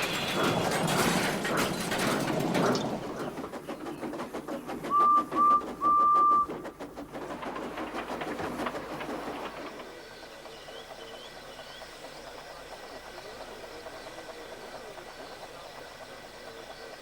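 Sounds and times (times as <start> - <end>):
steam locomotive chuffing: 0.0 - 17.0
steam whistle toots: 4.9 - 6.8.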